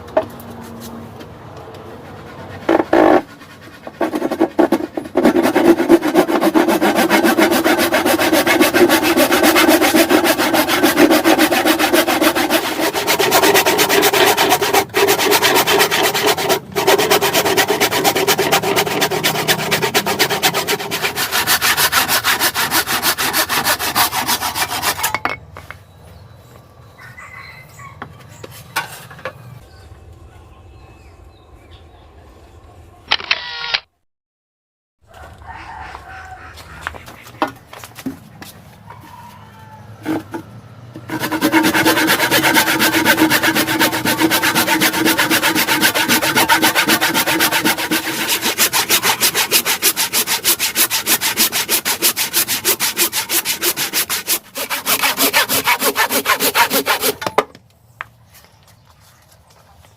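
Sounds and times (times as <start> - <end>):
hand saw cutting wood: 1.8 - 25.1, 40.0 - 40.4, 41.0 - 57.4.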